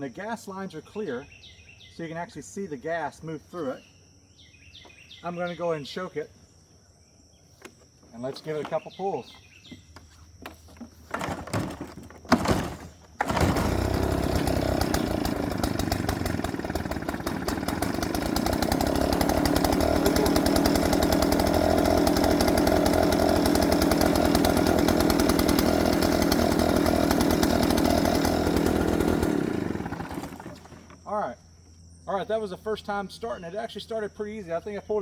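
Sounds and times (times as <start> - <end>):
recoil starter yanks: 10.4 - 31.1
leaf blower engine running: 10.5 - 31.0.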